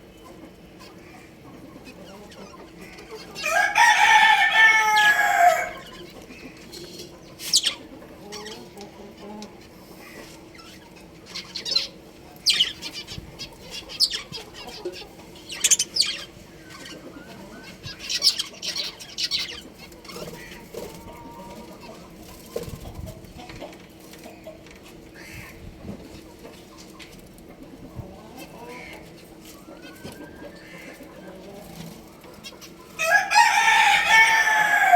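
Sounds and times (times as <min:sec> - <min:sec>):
rooster crowing: 0:03.4 - 0:06.0, 0:33.0 - 0:34.9
budgerigars chirping: 0:04.8 - 0:08.7, 0:09.9 - 0:21.1, 0:28.8 - 0:31.4.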